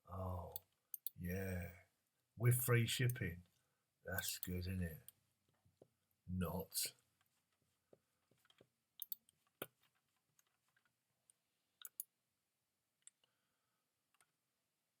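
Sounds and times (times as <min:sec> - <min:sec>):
computer mouse clicks: 0:00.5 - 0:01.2, 0:08.5 - 0:09.8, 0:11.8 - 0:12.1.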